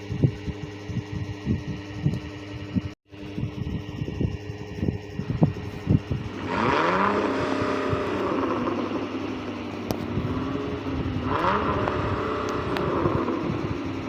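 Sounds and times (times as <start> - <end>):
vehicle engine revving: 5.2 - 14.0.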